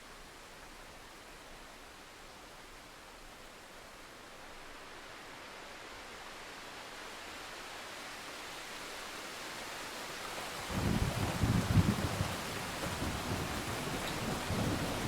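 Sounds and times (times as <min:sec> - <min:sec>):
rain hissing: 0:10.0 - 0:15.0.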